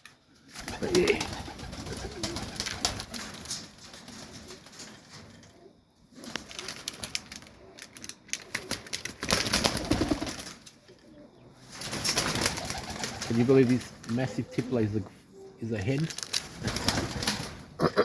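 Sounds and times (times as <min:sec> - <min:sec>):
wing-flapping and scuffling: 0:00.4 - 0:10.9, 0:11.6 - 0:15.2, 0:15.8 - 0:17.7
pigeons cooing: 0:00.4 - 0:15.5
clicks and rustling: 0:06.2 - 0:09.7, 0:15.8 - 0:16.8.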